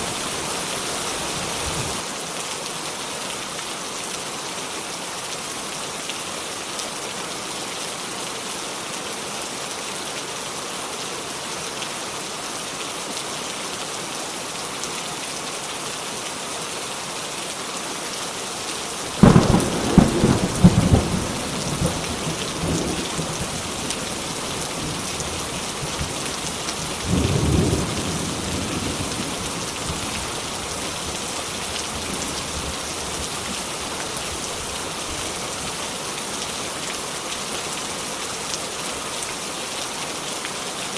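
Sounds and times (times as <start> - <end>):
steady rain falling: 0.0 - 40.9
thunder crackling and rumbling: 19.2 - 23.9.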